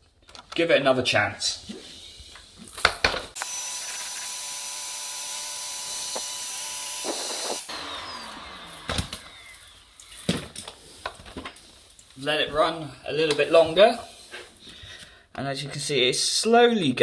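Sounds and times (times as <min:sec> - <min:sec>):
vacuum cleaner running: 0:03.4 - 0:10.4
vacuum cleaner spinning down: 0:03.4 - 0:10.4.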